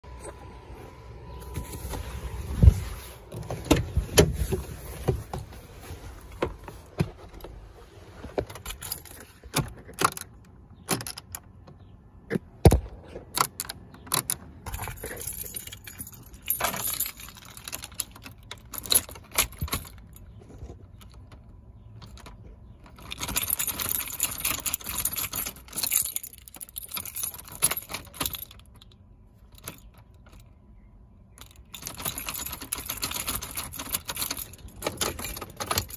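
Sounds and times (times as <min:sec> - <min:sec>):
keys jangling on a key ring: 0:14.1 - 0:20.4, 0:22.9 - 0:30.4, 0:31.4 - 0:35.9.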